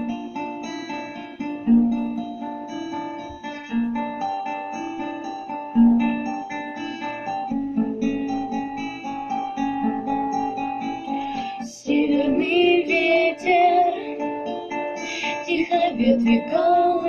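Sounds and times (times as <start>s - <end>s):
plucked acoustic guitar: 0.0s - 17.0s
person singing: 9.8s - 17.0s.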